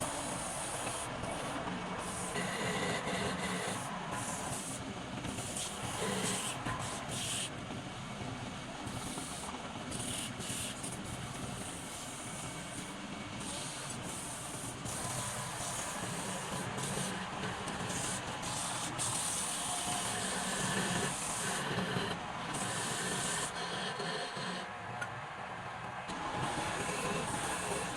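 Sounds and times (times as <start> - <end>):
woodworking machine running: 0.0 - 7.3, 13.7 - 27.9.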